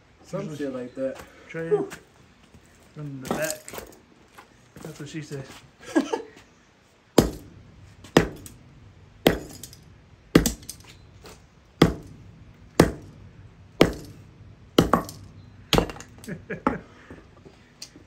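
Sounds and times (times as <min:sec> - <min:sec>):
blows striking metal capacitor: 0:07.2 - 0:16.8.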